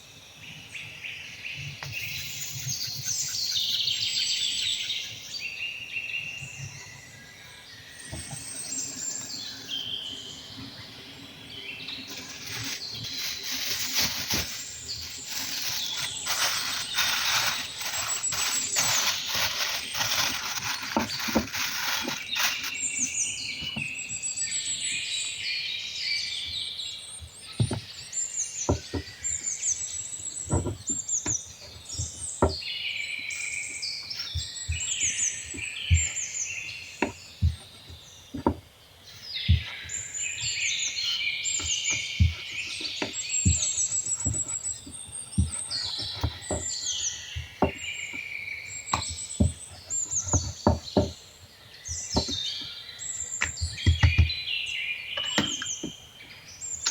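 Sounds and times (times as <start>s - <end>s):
songbirds chirping: 0.0s - 56.9s
crackly rustling: 11.6s - 23.1s.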